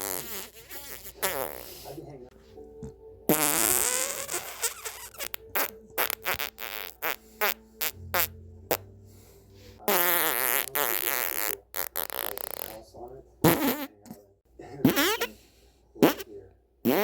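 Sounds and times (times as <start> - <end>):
farting: 0.0 - 1.8, 3.3 - 8.9, 9.9 - 12.8, 13.4 - 14.1, 14.8 - 15.4, 16.0 - 17.0.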